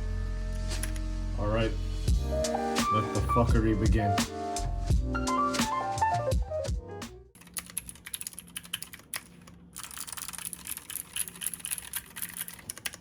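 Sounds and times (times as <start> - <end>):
mechanical keyboard typing clicks: 7.4 - 13.0.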